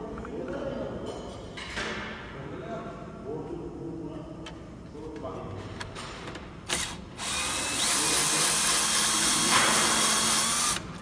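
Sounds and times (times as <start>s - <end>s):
cable stripping machine whirring: 6.7s - 11.0s.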